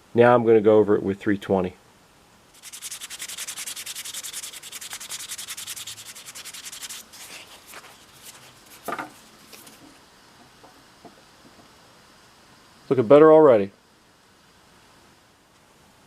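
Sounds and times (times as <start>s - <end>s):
hand sanding plastic: 2.5s - 10.0s.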